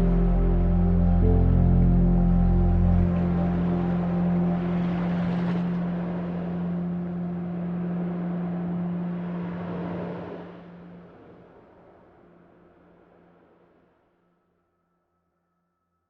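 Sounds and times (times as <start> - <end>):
steady low hum: 0.0 - 12.6.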